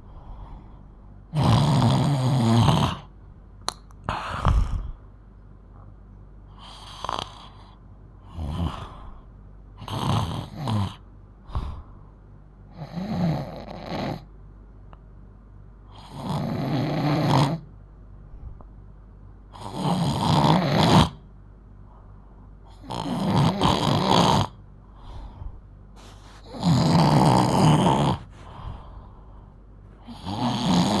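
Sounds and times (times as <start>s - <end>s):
girl snoring loudly: 1.3s - 3.1s, 19.6s - 21.2s, 22.8s - 24.5s, 26.0s - 28.9s, 30.0s - 31.0s.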